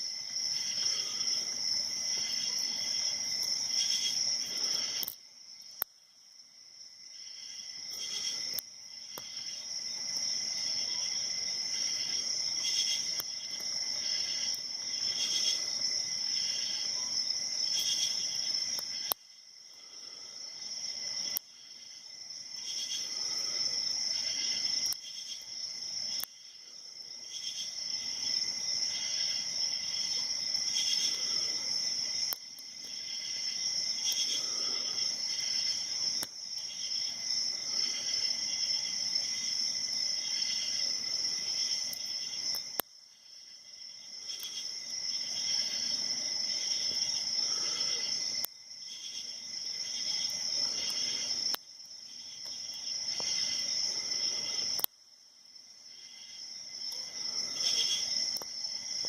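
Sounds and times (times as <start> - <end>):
insects chirring: 0.0 - 59.0
faint ticks: 4.7 - 5.2, 18.7 - 19.2, 26.2 - 26.4, 36.1 - 36.7, 41.9 - 42.9, 54.6 - 55.0, 58.3 - 58.5.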